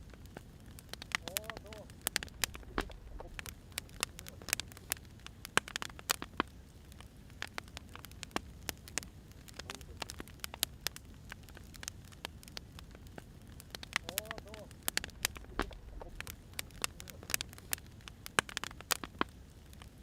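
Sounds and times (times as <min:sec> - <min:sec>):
wood fire crackling: 0:00.0 - 0:20.0.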